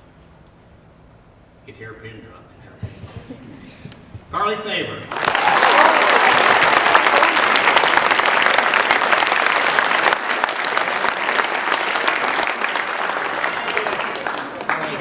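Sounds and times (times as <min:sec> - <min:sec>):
audience applauding: 0:05.1 - 0:15.0.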